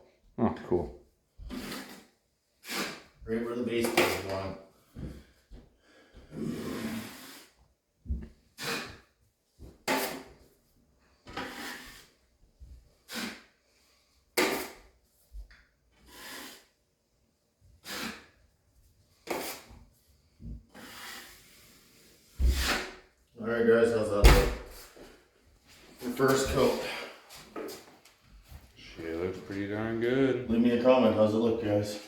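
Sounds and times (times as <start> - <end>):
drywall knife scraping wall: 1.4 - 4.6, 8.6 - 10.5, 11.1 - 12.3, 13.0 - 13.6, 14.4 - 15.0, 17.8 - 18.4, 19.2 - 23.1.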